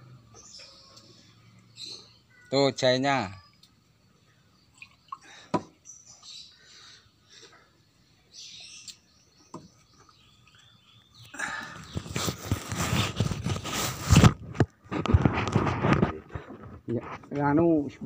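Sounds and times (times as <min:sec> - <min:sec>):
faint bird chirps: 0:00.0 - 0:12.5
loud rough noise with thumps: 0:11.9 - 0:16.7.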